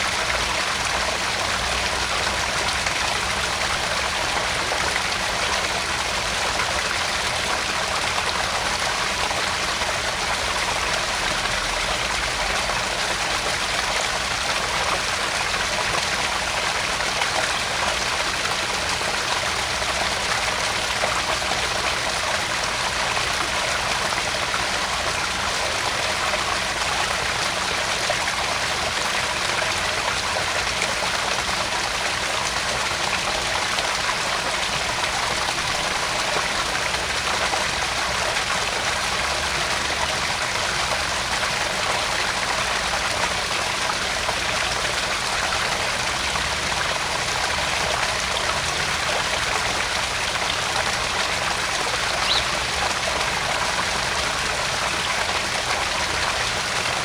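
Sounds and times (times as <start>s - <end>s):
waterfall splashing into pond: 0.0s - 57.0s.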